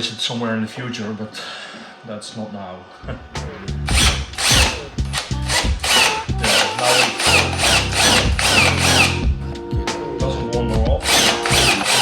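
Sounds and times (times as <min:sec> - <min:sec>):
background music with steady beat: 0:00.0 - 0:12.0
power drill drilling into plastic: 0:03.9 - 0:09.2, 0:11.0 - 0:12.0.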